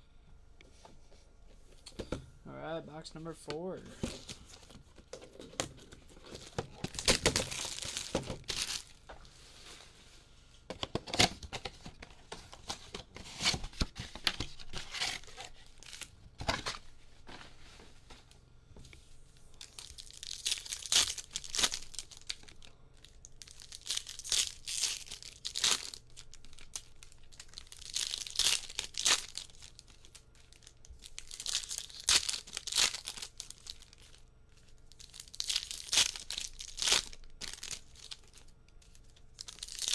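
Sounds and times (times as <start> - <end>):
foil wrappers tearing and crinkling: 4.0 - 9.0, 11.0 - 16.9, 19.5 - 39.9.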